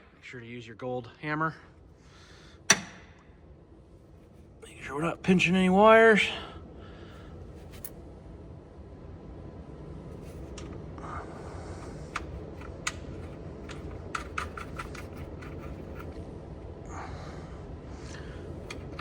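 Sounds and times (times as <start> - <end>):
steady low hum: 0.0 - 19.0
plastic parts clicking: 12.1 - 16.1.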